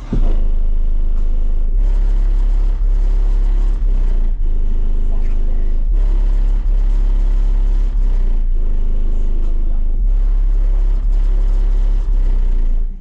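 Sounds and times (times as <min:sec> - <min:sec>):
loud deep bass from subwoofers: 0:00.0 - 0:13.0.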